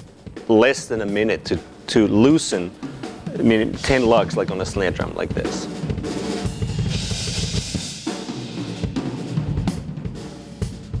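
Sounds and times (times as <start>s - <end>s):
drum hits: 1.7s - 7.8s.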